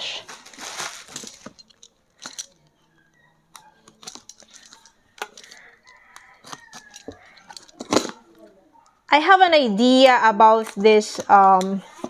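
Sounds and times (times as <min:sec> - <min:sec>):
packaging clicks and rustles: 0:00.0 - 0:02.8, 0:03.5 - 0:08.5.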